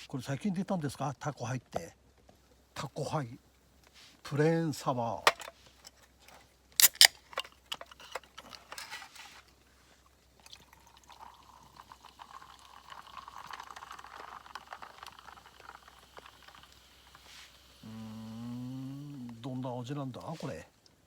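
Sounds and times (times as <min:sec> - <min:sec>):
can handling clicks: 0:05.3 - 0:06.0, 0:06.8 - 0:09.0
drink pouring from can: 0:10.4 - 0:19.3.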